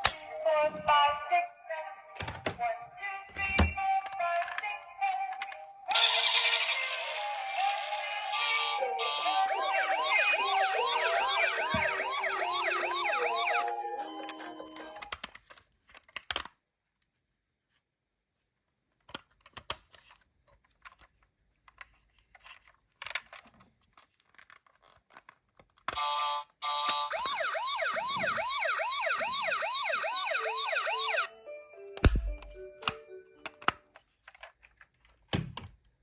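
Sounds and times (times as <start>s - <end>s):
toy electronic siren: 5.9s - 15.1s, 25.9s - 31.4s.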